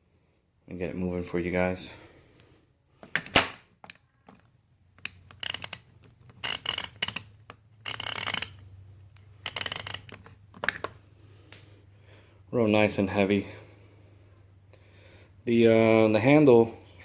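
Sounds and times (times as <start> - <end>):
ratchet clicking rapidly: 5.3 - 8.6, 9.3 - 10.2.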